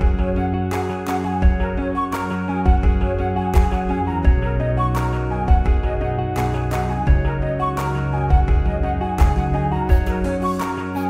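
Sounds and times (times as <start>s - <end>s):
soft instrumental music: 0.0s - 11.0s.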